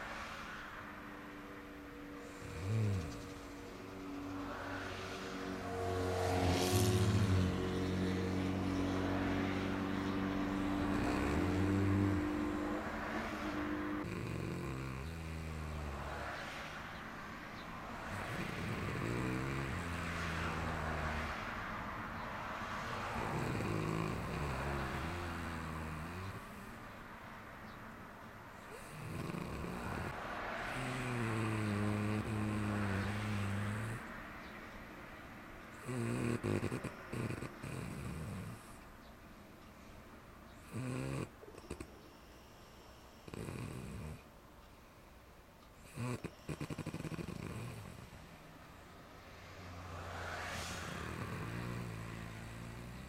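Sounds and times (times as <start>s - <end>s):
person snoring: 2.3s - 3.2s, 10.8s - 12.8s, 13.4s - 16.2s, 18.1s - 21.1s, 23.1s - 26.8s, 28.7s - 34.1s, 35.8s - 38.7s, 40.6s - 41.9s, 45.8s - 48.2s, 50.9s - 53.0s.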